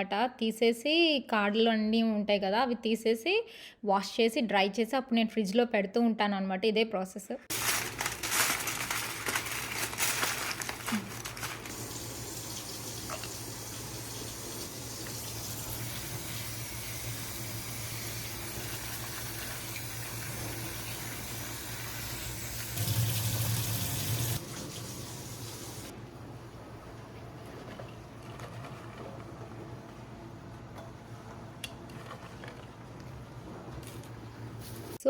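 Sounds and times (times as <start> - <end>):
rustling handling: 7.5 - 11.8
tap running into a sink: 12.5 - 16.0.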